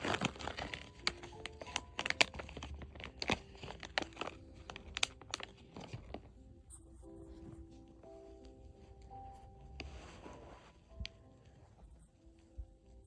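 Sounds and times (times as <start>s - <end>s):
plastic snack bag crinkling: 0.0s - 7.2s.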